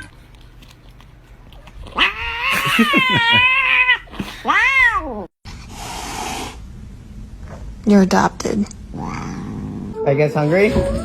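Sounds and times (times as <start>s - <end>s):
cat meowing: 1.9s - 5.3s
cat yowling: 1.9s - 5.3s.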